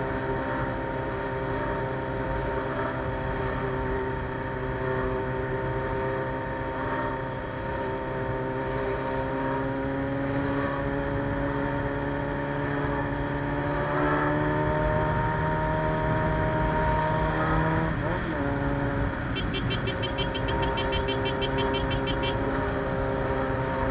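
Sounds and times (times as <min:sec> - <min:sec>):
motorcycle engine running: 0:14.7 - 0:23.9.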